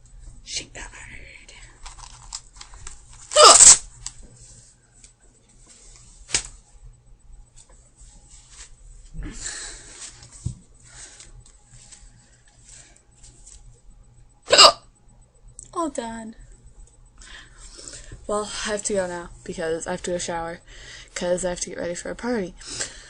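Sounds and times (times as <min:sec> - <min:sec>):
girl hiccuping: 0:03.3 - 0:03.8, 0:14.5 - 0:14.8.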